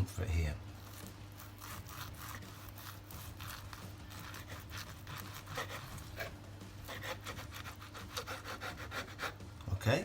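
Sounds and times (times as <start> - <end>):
knife sawing through steak: 0.8 - 9.4.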